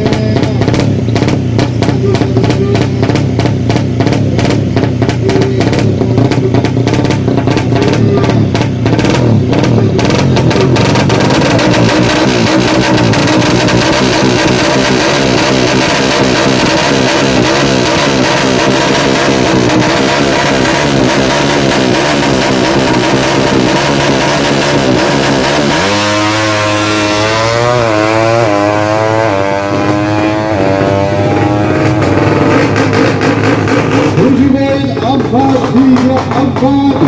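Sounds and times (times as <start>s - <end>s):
motorcycle accelerating through gears: 0.0s - 37.0s
motorcycle engines revving loud: 0.0s - 37.0s.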